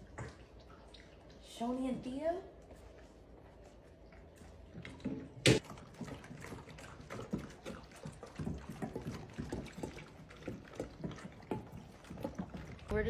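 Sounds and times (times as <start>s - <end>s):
dogs eating from bowls: 0.0s - 13.0s.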